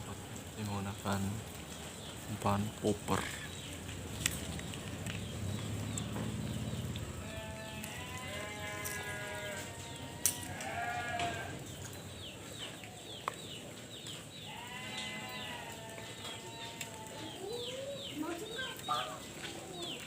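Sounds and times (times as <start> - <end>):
livestock bleating: 7.1 - 11.6, 14.4 - 17.1.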